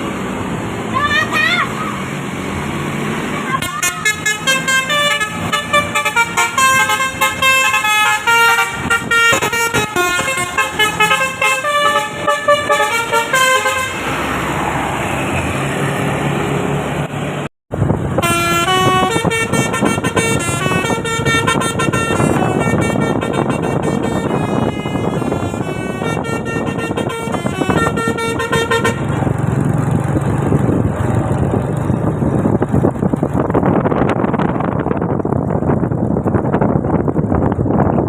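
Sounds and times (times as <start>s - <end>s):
multi-tone musical horn: 3.6s - 14.1s, 18.2s - 29.2s.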